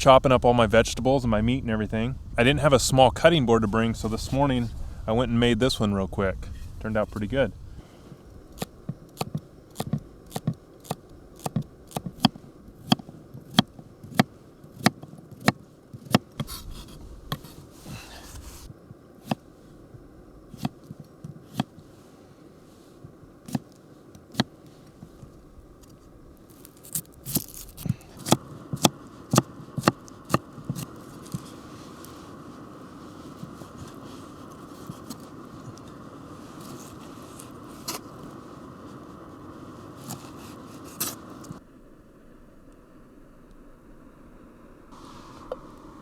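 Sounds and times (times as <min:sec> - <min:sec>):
knife chopping on wooden board: 0:28.2 - 0:30.9.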